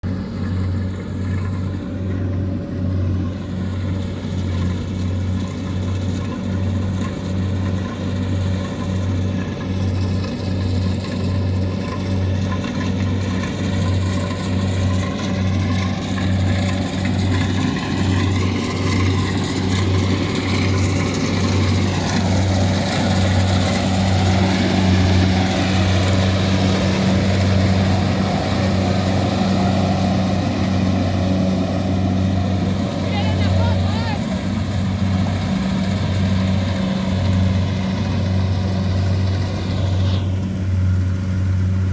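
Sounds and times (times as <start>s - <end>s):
farm machine engine throbbing: 0.0s - 41.9s
rough rushing noise: 9.8s - 41.9s.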